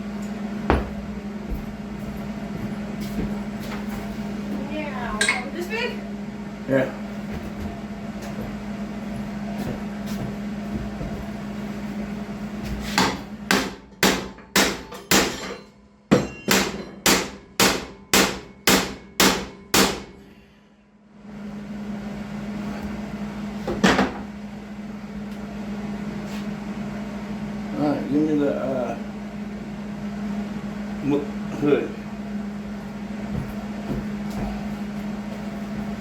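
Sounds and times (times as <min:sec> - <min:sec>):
steady low hum: 0:00.0 - 0:36.0
hammer striking metal: 0:13.0 - 0:20.2.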